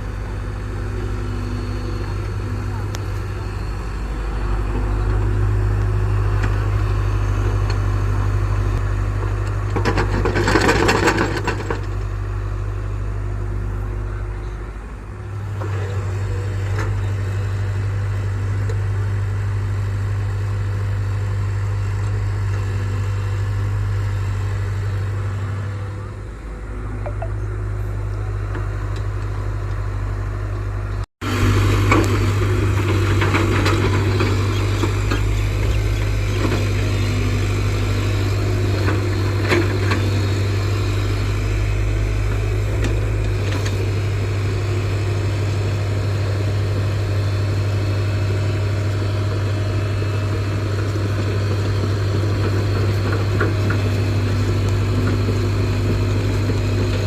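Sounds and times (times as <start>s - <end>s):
excavator diesel engine running: 0.0s - 57.0s.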